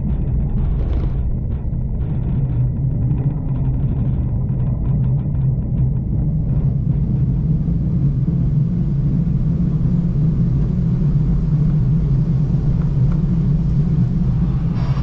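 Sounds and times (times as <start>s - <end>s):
passenger train rumbling on track: 6.0s - 15.0s.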